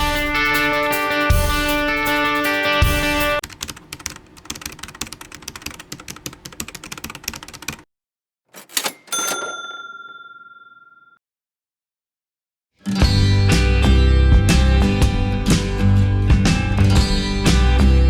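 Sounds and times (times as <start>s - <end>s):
typewriter key clacking: 3.4s - 7.8s, 8.5s - 9.6s
typewriter carriage swish: 8.5s - 9.5s
typewriter bell ding: 8.5s - 11.2s.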